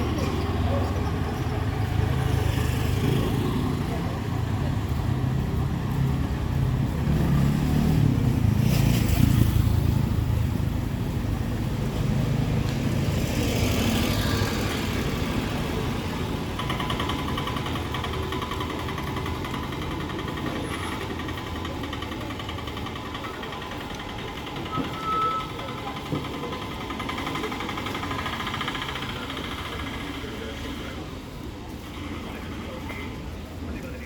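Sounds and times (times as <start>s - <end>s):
vehicle engine passing: 0.0s - 21.8s.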